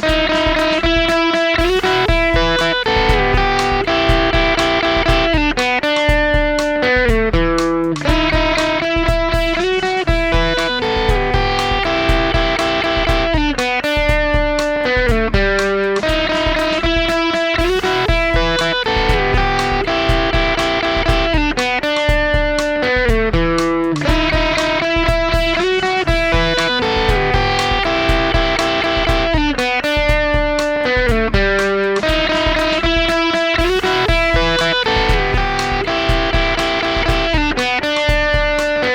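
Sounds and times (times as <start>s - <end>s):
electric guitar playing: 0.0s - 38.9s.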